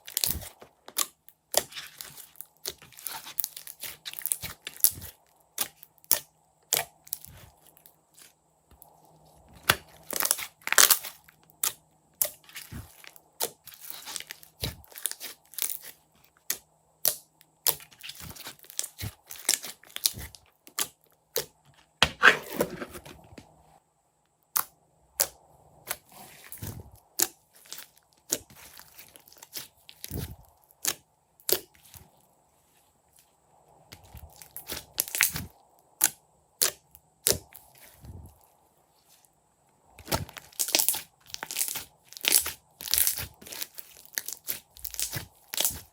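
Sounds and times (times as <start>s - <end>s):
slime squishing and popping: 34.0s - 37.6s, 40.0s - 45.9s.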